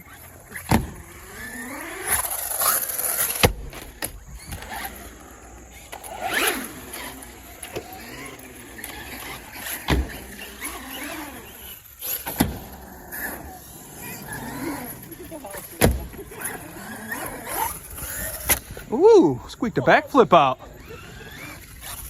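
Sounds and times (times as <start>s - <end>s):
electric motors whining: 0.0s - 22.0s
trucks thudding on concrete: 5.8s - 18.8s.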